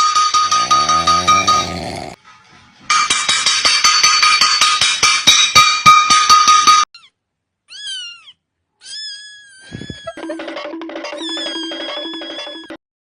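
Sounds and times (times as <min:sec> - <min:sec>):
cat meowing: 0:07.0 - 0:10.2.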